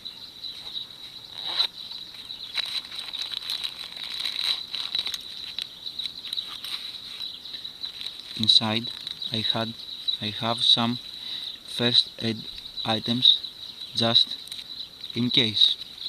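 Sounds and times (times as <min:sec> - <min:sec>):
crickets trilling: 0:00.0 - 0:16.0
wallet clicks and rustles: 0:01.3 - 0:07.3.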